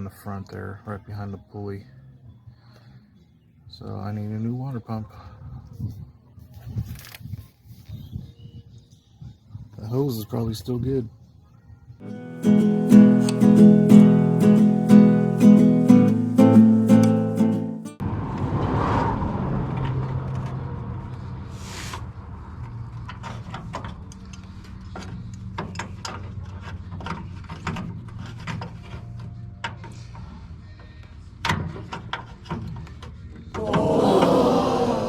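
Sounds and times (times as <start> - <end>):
short hiss: 21.5 - 22.0.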